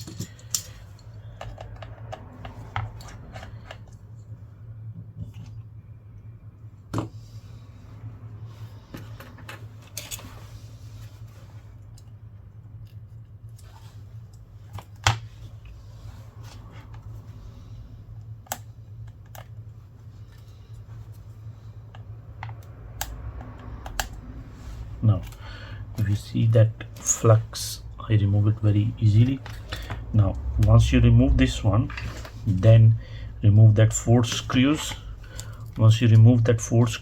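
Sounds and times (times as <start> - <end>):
small tools clicking and tapping: 0.0 - 4.1
steady low hum: 0.0 - 37.0.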